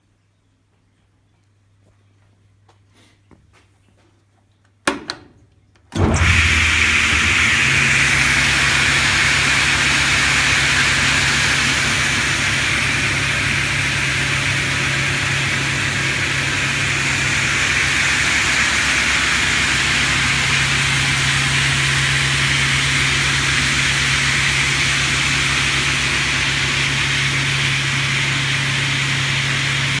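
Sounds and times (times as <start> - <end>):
saw motor hum: 6.0 - 30.0
spinning saw blade whir: 6.0 - 30.0.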